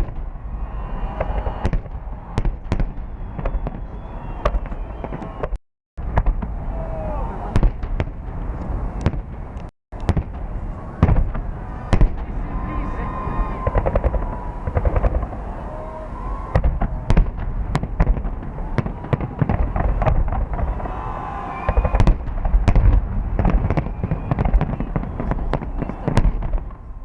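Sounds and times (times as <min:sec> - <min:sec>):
fireworks bangs and crackles: 0:00.0 - 0:27.0
continuous low rumble: 0:06.0 - 0:27.0.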